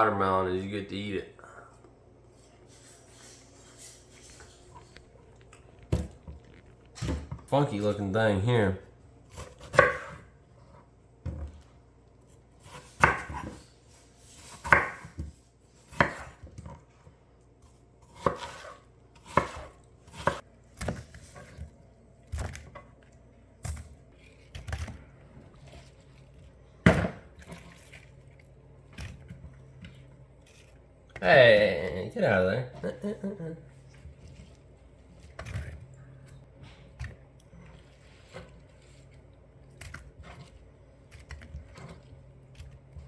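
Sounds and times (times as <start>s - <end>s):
knife chopping on cutting board: 9.3s - 10.3s, 12.6s - 13.6s, 14.4s - 16.8s, 18.1s - 21.6s.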